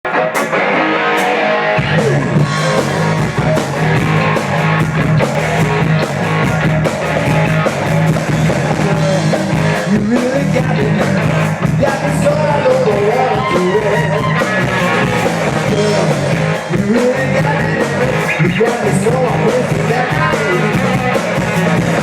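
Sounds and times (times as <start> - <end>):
guitar chords: 0.0 - 22.0
drum hits: 1.2 - 11.9
heavy low bass: 1.7 - 22.0.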